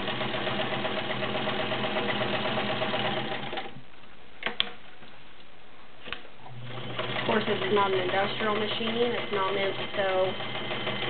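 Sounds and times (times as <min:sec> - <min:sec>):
sewing machine stitching: 0:00.0 - 0:03.8, 0:06.6 - 0:11.0.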